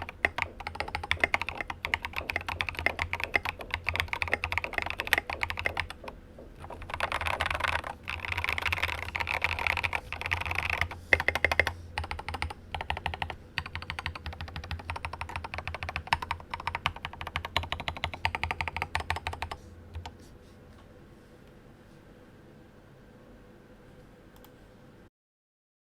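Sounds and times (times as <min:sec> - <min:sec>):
mechanical keyboard typing: 0:00.0 - 0:20.2.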